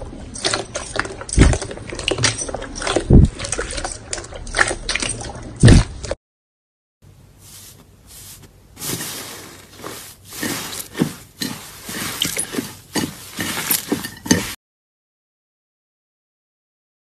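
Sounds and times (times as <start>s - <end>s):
slime squelching: 0.0s - 6.2s, 7.4s - 14.6s.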